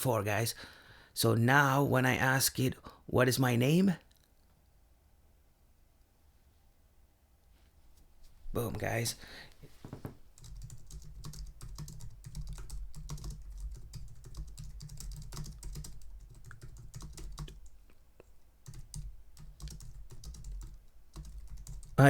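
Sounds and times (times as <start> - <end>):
typing on keyboard: 10.4 - 17.8, 18.6 - 22.0.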